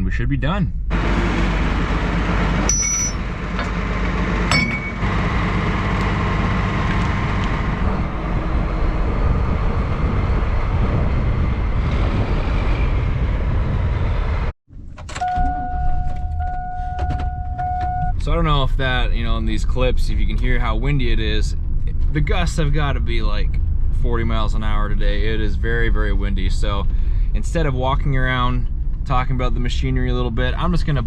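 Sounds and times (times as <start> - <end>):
vehicle engine running: 0.9 - 11.8
sharp metal clinks: 2.7 - 3.7, 4.5 - 5.1
wind buffeting microphone: 6.0 - 14.5.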